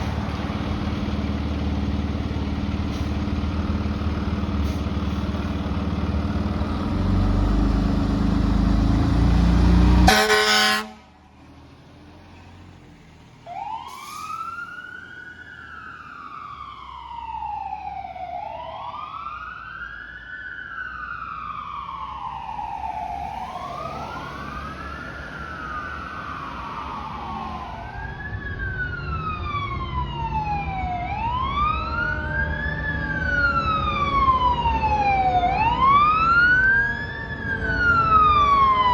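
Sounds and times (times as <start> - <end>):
fire truck siren wailing: 0.0 - 11.2, 13.4 - 38.9
fire truck engine: 0.0 - 38.9
fire truck air horn: 10.0 - 11.2, 13.8 - 14.5
siren with fast sweeps: 13.5 - 38.9.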